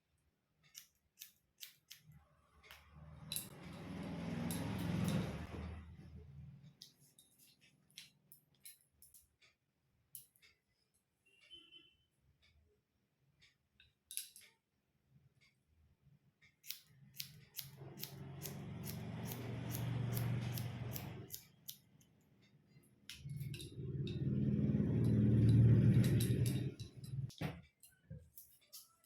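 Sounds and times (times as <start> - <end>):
scissors snipping hair: 0.7 - 2.1, 16.6 - 21.9.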